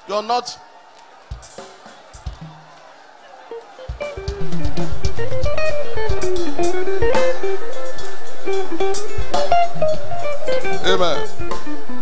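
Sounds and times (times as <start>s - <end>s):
drum hits: 1.2s - 3.0s, 3.8s - 11.8s
guitar playing melody: 4.1s - 12.0s
bass guitar: 4.4s - 12.0s.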